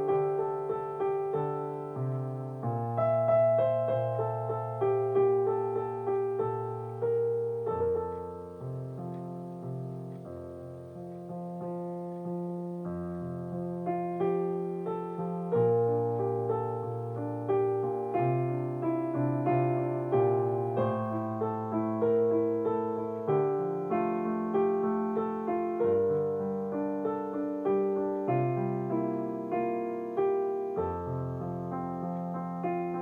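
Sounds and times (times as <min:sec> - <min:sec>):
slow piano music: 0:00.0 - 0:33.0.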